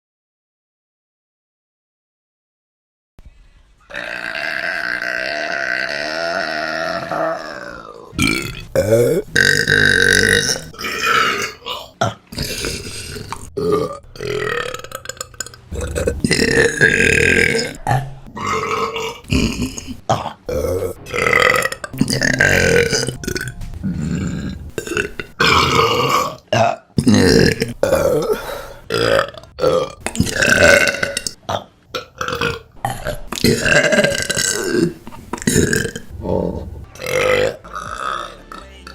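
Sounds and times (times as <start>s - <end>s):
women burping: 3.9s - 31.4s, 37.0s - 38.4s.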